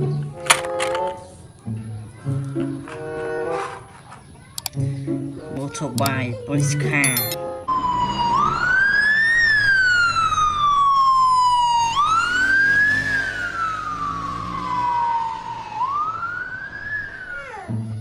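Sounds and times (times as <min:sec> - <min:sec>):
police siren wailing: 0:07.2 - 0:17.8.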